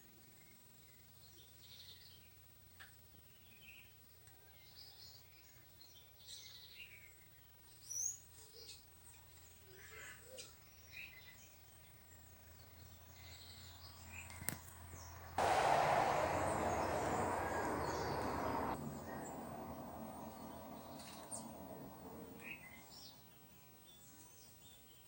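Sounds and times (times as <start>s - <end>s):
loud rushing noise: 15.4s - 18.8s.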